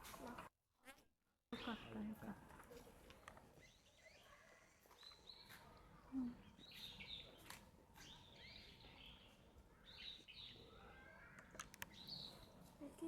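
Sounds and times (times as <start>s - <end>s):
faint bird chirps: 3.1s - 12.6s.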